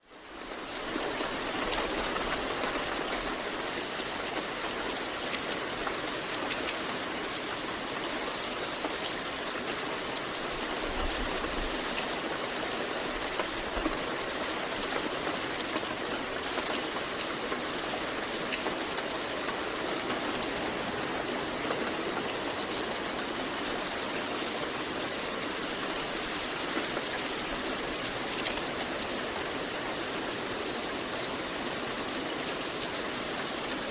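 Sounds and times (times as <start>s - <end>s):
steady rain hiss: 0.0s - 33.9s.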